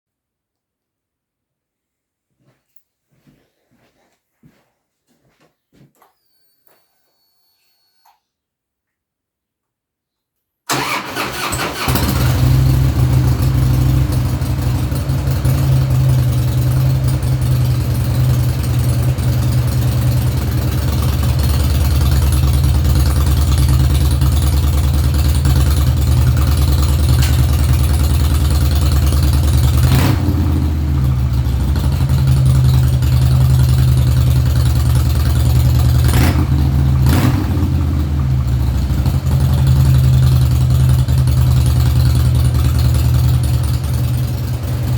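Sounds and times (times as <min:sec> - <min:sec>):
motorcycle engine starting and idling: 0:10.7 - 0:44.9.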